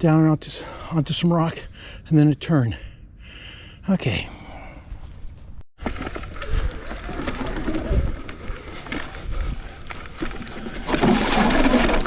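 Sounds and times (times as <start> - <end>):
bike tyres rumbling over dirt: 5.8 - 12.0
bike chain and frame rattling: 10.9 - 12.0.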